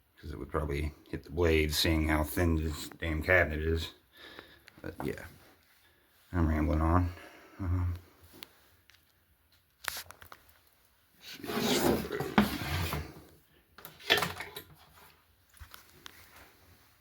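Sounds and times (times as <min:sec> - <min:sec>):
fan rubbing and scraping: 0:11.2 - 0:13.3.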